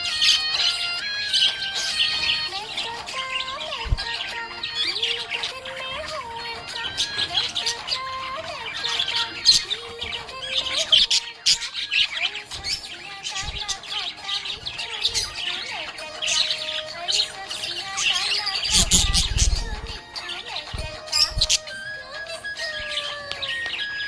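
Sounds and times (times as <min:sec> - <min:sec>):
background music: 0:00.0 - 0:24.0
budgerigar chirping and warbling: 0:00.0 - 0:24.0.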